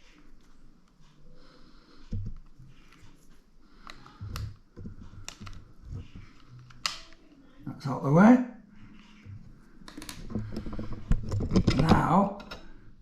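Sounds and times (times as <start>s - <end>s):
plastic and metal clicks: 3.8s - 7.3s.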